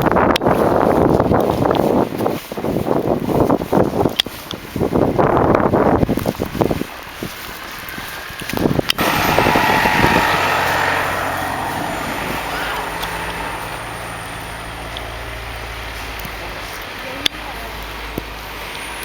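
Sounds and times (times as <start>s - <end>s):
vehicle passing: 7.2s - 17.0s
large engine humming: 7.2s - 17.8s.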